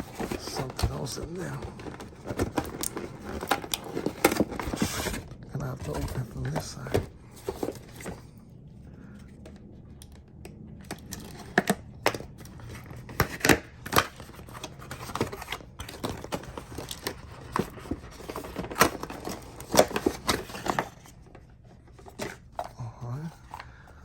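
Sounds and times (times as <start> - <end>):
packaging tearing and crinkling: 0.0 - 8.2, 10.8 - 21.2.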